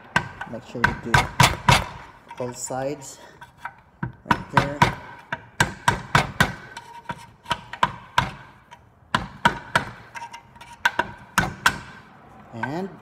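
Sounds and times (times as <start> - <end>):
hammer tapping metal: 4.0 - 12.0.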